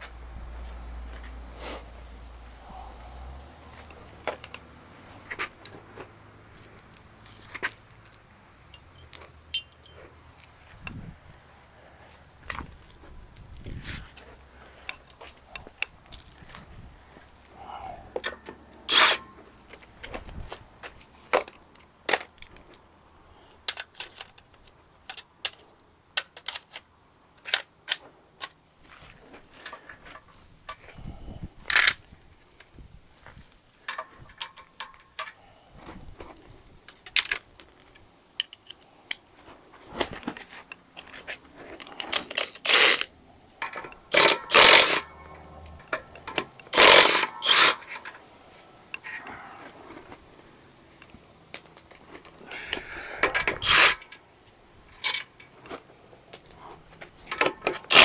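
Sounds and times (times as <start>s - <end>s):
hand tools clinking on metal: 3.7s - 11.5s, 33.8s - 35.5s, 40.4s - 48.3s, 50.8s - 58.0s.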